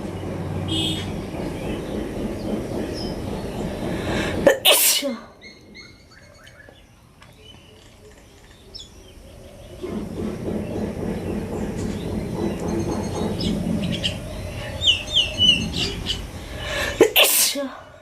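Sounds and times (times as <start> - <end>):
birds chirping: 0.0 - 18.0
low rumbling noise: 0.0 - 18.0.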